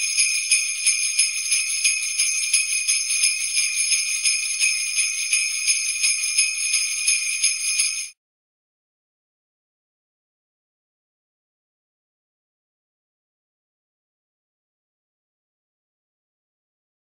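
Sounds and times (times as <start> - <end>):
sleigh bells jingling: 0.0 - 8.2.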